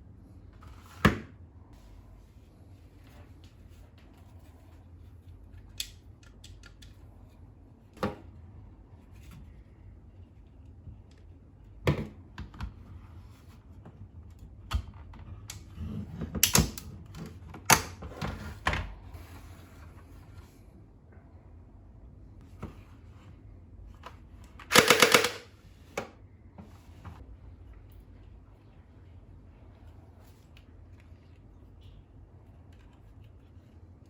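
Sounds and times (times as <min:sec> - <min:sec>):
loud rapid rattling burst: 0:24.7 - 0:25.5
plastic toy clicks and knocks: 0:24.7 - 0:25.5.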